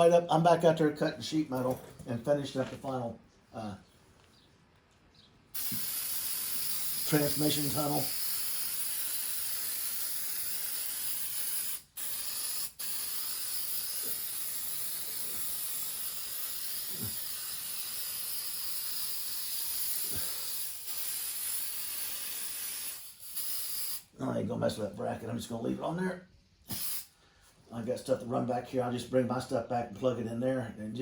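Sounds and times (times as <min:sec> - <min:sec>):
aerosol spray paint hissing: 0:05.6 - 0:24.1, 0:26.7 - 0:27.1.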